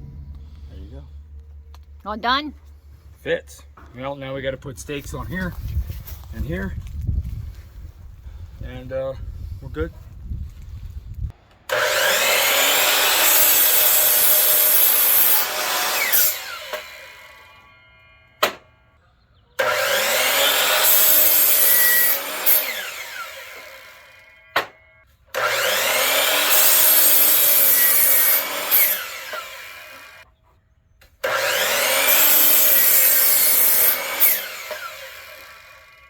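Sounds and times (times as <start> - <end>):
wood being sawn: 11.7 - 17.8, 19.6 - 30.2, 31.2 - 36.0.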